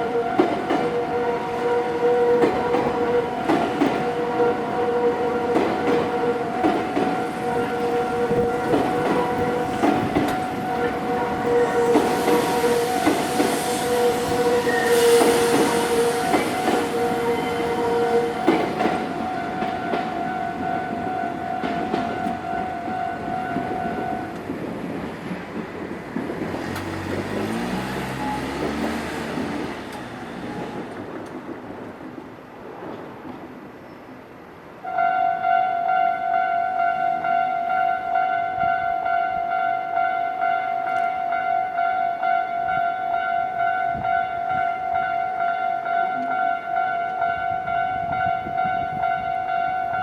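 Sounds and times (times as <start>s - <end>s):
train wheels clacking over rail joints: 2.3s - 4.4s, 5.4s - 22.6s, 23.4s - 32.2s.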